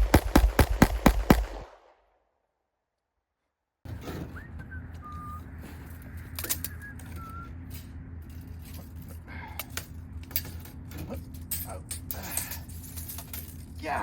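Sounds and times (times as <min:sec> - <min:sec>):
steady low hum: 0:00.0 - 0:02.1, 0:03.9 - 0:14.0
short whistled chirps: 0:04.1 - 0:05.8, 0:06.5 - 0:07.6.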